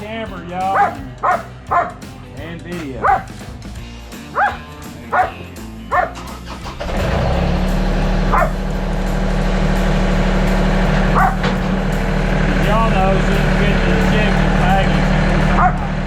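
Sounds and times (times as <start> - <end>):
tractor engine running: 0.0 - 16.0
dog yelping and barking: 0.8 - 2.0, 3.0 - 3.3, 4.3 - 6.3, 8.3 - 8.6, 11.2 - 11.5, 15.6 - 15.9.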